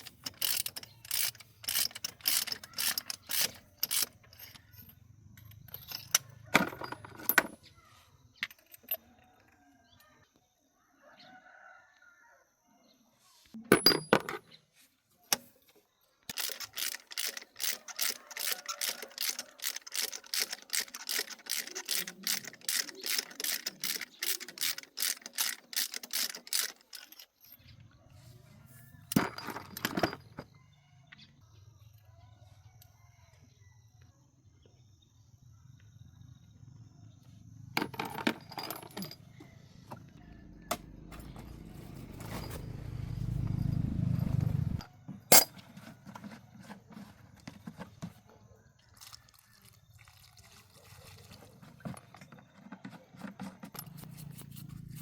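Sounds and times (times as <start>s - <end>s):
ratchet wrench clicking: 0.0s - 4.8s, 16.3s - 27.2s
metal clanks: 40.7s - 45.7s.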